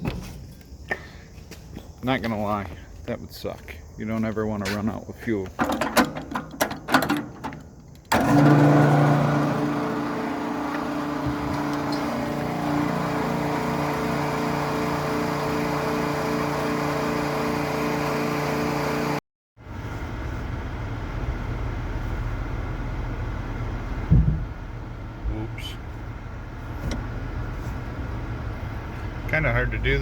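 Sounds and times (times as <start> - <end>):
machine humming: 8.1 - 19.2.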